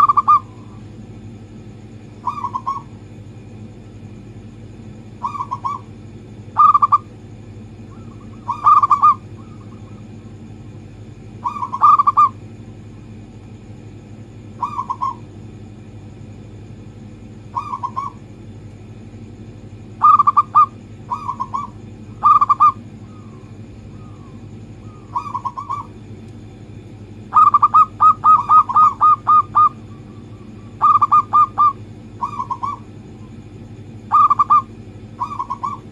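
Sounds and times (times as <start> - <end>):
doves cooing: 0.0 - 0.9, 2.1 - 3.5, 5.0 - 12.5, 14.5 - 15.4, 17.4 - 18.3, 19.8 - 26.2, 27.2 - 33.4, 34.0 - 35.9
steady low hum: 0.0 - 35.9.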